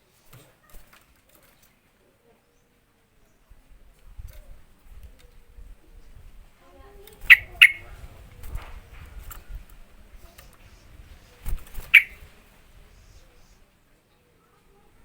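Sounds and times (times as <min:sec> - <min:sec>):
bird chirping: 0:07.2 - 0:08.0, 0:10.3 - 0:13.6.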